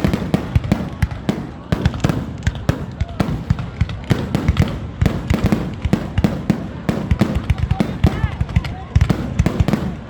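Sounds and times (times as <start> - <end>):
fireworks bursting: 0.0 - 10.0.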